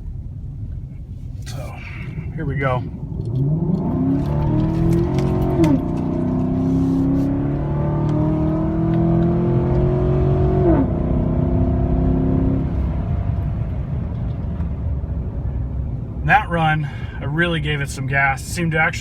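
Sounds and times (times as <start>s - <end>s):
truck engine at full throttle: 1.4s - 14.0s.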